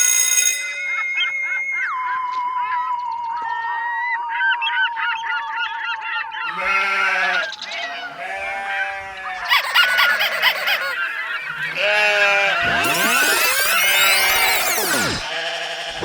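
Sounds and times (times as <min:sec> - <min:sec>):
geese honking: 0:06.5 - 0:16.0.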